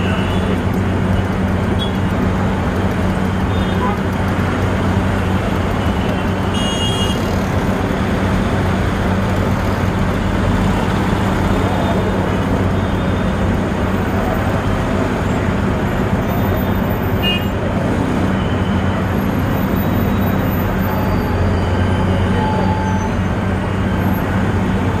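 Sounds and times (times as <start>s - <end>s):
vehicle engines humming: 0.0s - 25.0s.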